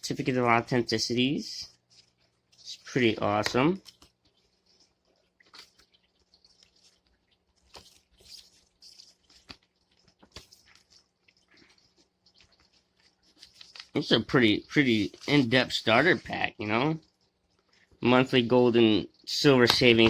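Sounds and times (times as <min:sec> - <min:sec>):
paper rustling and crinkling: 0:01.6 - 0:16.3.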